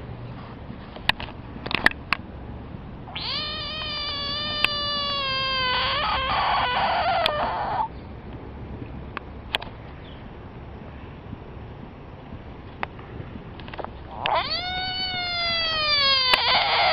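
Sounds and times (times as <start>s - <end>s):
frog distress yell: 3.1s - 7.9s, 14.1s - 16.9s
sharp clicks: 3.2s - 4.9s.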